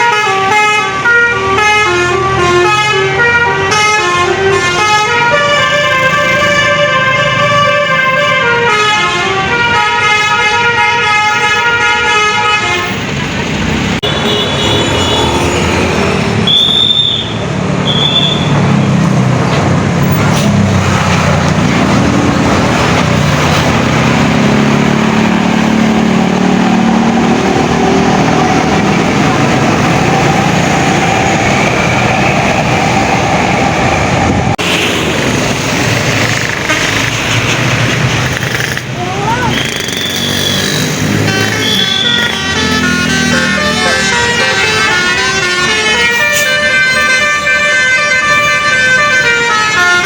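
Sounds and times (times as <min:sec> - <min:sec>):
diesel bus engine rumble: 0:00.0 - 0:50.0.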